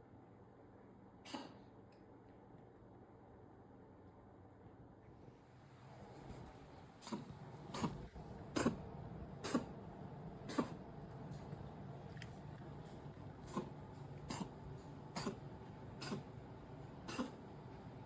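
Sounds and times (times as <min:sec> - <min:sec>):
cat coughing: 0:01.2 - 0:01.7, 0:07.0 - 0:08.8, 0:09.4 - 0:09.7, 0:10.5 - 0:10.8, 0:13.5 - 0:16.3, 0:17.0 - 0:17.4.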